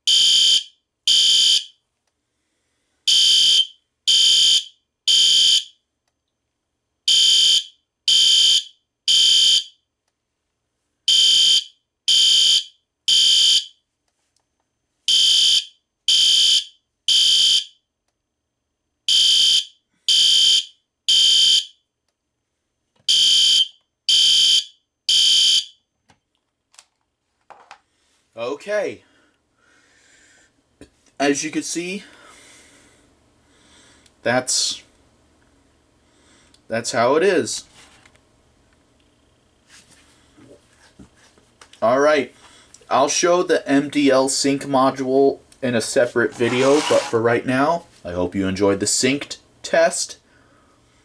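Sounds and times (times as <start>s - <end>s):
fire alarm horns blasting: 0.0s - 1.8s, 3.1s - 5.8s, 7.1s - 9.8s, 11.1s - 13.8s, 15.1s - 17.8s, 19.1s - 21.8s, 23.1s - 25.8s.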